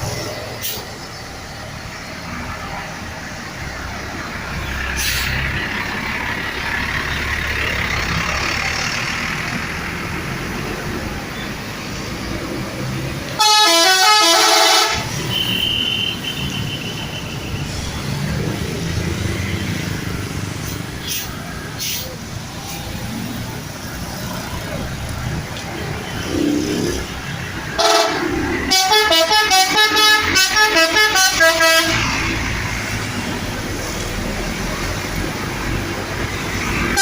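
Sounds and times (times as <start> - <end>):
outdoor noise: 0.0 - 37.0
multi-tone musical air horn: 13.4 - 16.2, 27.8 - 32.0.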